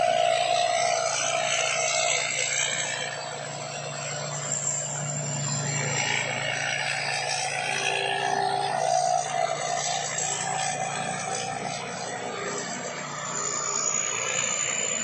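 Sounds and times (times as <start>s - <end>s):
combine harvester engine drone: 0.0s - 15.0s
machine rushing noise: 0.0s - 15.0s.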